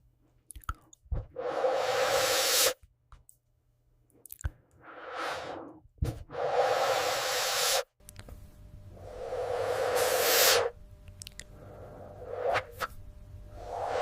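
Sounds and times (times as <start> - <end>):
breath blown through hose: 1.2 - 2.8, 4.8 - 7.9, 8.9 - 10.8, 11.6 - 12.9, 13.5 - 14.0.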